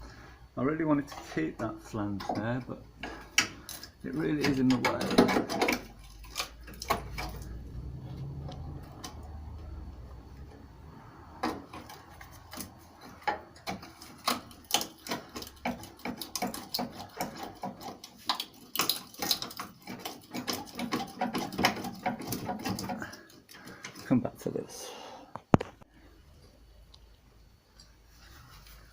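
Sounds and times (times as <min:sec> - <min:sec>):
hand tools tapping and clicking: 0:02.0 - 0:07.6, 0:11.4 - 0:24.1
low rumble: 0:07.0 - 0:11.4.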